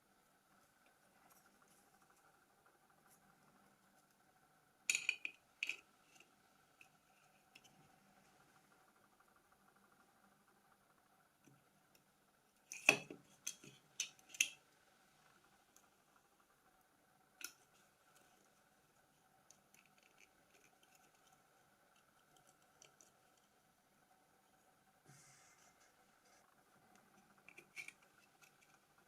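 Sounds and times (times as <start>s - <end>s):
faint light ticking of tools: 0.5s - 29.0s.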